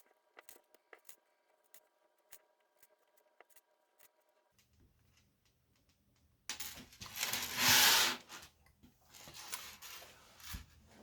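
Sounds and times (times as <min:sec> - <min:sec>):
loud scraping rustle: 0:07.0 - 0:08.5.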